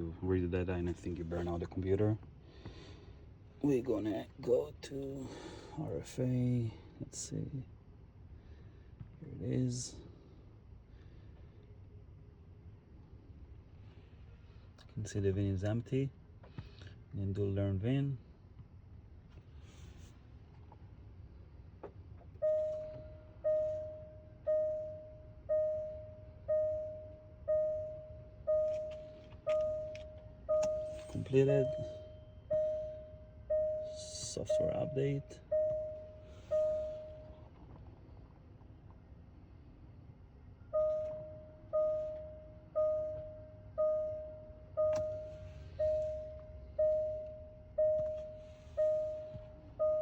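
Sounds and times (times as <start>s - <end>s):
car warning chime: 3.6s - 6.6s, 22.4s - 37.6s, 40.6s - 50.0s.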